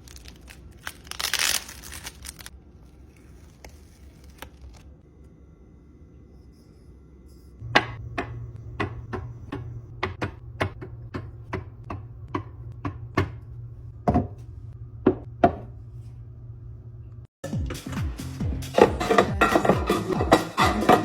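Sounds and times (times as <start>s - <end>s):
steady low hum: 2.3s - 17.3s.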